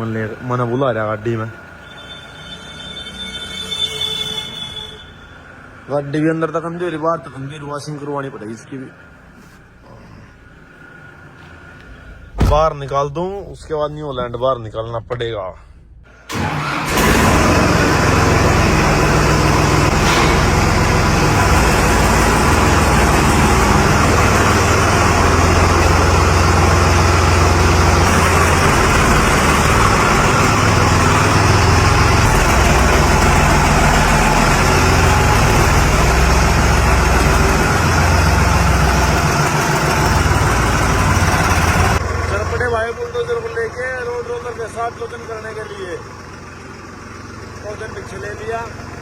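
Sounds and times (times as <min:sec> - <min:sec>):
tractor engine running: 0:16.3 - 0:49.0.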